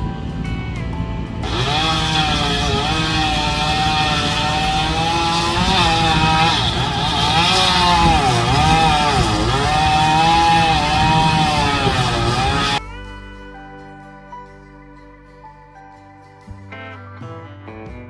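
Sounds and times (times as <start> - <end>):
chainsaw cutting wood: 1.4 - 12.8.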